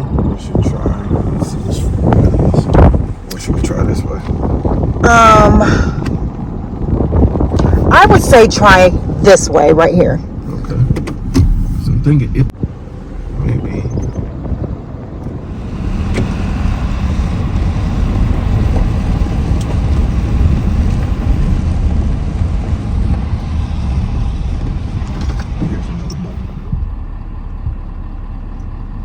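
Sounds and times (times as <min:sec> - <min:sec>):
engine and tyres rumbling: 0:00.0 - 0:29.0
knocks and rattles in truck cab: 0:10.7 - 0:11.9, 0:27.6 - 0:27.9.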